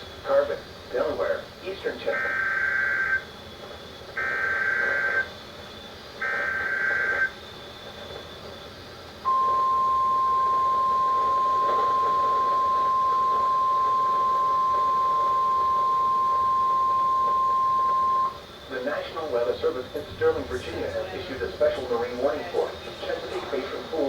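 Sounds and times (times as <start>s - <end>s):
steady warning alarm tone: 2.1s - 3.3s, 4.2s - 5.4s, 6.2s - 7.4s, 9.2s - 24.0s.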